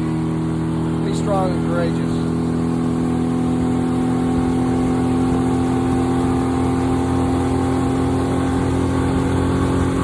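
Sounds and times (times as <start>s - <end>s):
boat motor droning: 0.0s - 10.0s.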